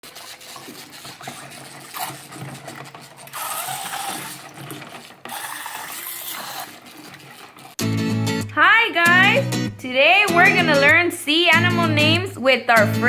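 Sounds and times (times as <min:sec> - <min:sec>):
wind-up toy whirring and clicking: 0:00.1 - 0:07.8.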